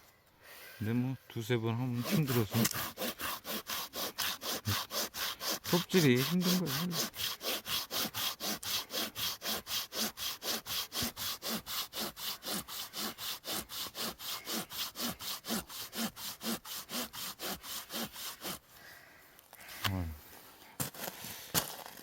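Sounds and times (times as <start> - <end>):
hand saw cutting log: 1.8 - 18.7.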